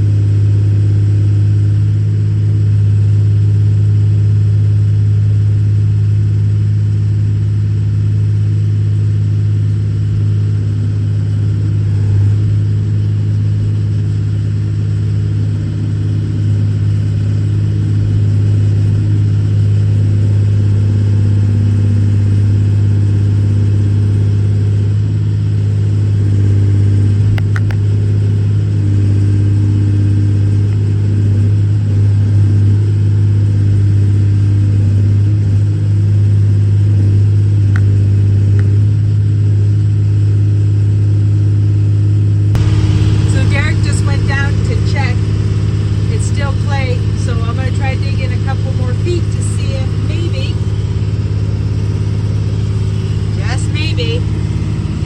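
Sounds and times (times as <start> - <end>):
excavator diesel engine running: 42.6 - 55.0.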